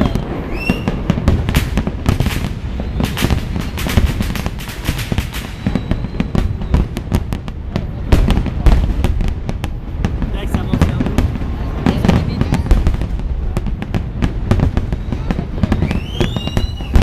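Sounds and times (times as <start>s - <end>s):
firework whistle: 0.0s - 7.5s, 14.6s - 17.0s
fireworks crackling bursts: 0.0s - 17.0s.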